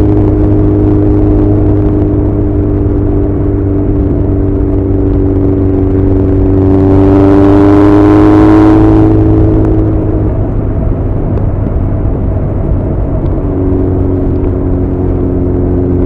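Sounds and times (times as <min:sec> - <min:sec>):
motorcycle engine exhaust: 0:00.0 - 0:16.0.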